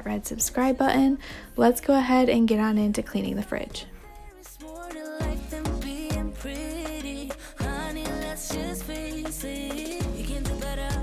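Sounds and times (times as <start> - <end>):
pop music with synth and kick drum: 3.3 - 11.0.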